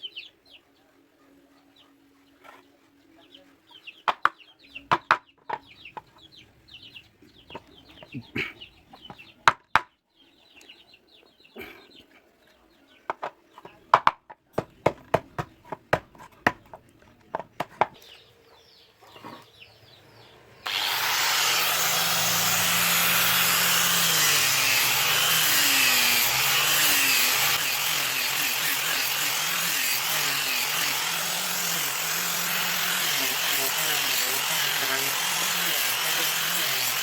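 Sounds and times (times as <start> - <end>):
power tool grinding steel: 20.6 - 37.0.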